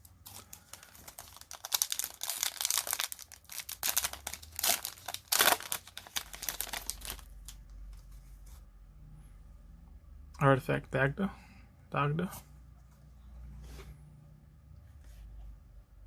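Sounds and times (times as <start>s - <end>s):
wrapper crinkling and tearing: 0.2s - 7.6s.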